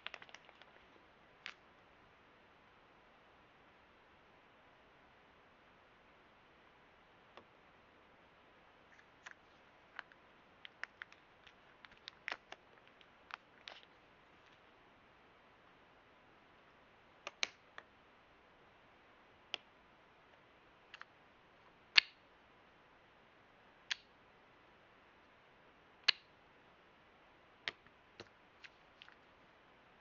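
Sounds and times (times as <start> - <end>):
small plastic clicks and taps: 9.2 - 13.9, 17.2 - 17.9, 22.0 - 22.2, 26.0 - 26.3.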